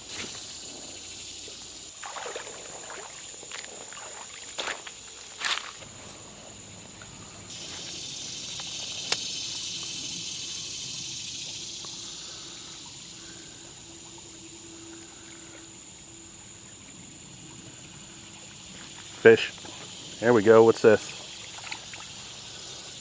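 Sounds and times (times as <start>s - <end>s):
high insect whine: 0.0s - 23.0s
water trickling: 0.6s - 23.0s
hiss: 7.5s - 13.6s.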